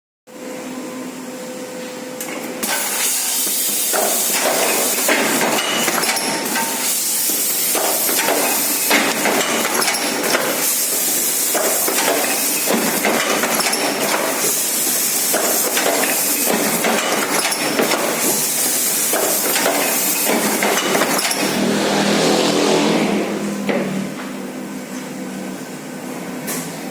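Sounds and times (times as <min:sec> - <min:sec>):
machine hissing: 0:02.6 - 0:23.5.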